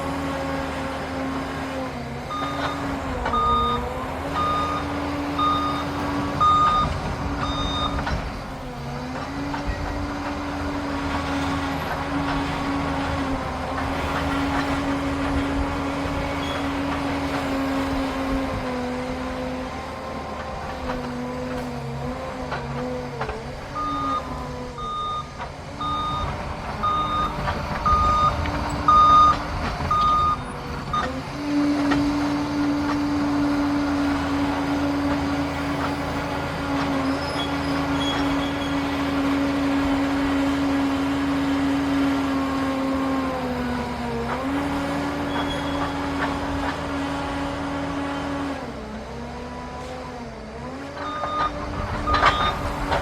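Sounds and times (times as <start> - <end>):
diesel engine running: 0.0 - 53.0
reversing alarm beeps: 2.3 - 8.1, 23.8 - 31.1, 51.0 - 52.7.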